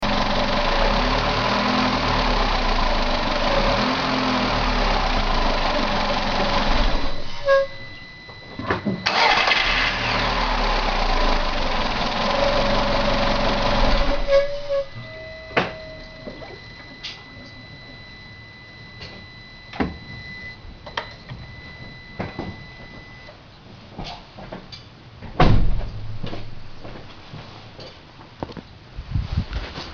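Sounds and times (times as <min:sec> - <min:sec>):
car engine idling: 0:00.0 - 0:08.0, 0:09.0 - 0:16.4
faint high whine: 0:06.8 - 0:09.6, 0:14.0 - 0:23.4
knock with low thud: 0:25.4 - 0:26.5.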